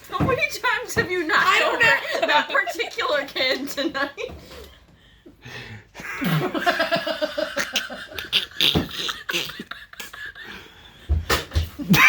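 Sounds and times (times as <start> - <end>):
people laughing: 1.4 - 2.8, 6.0 - 12.0.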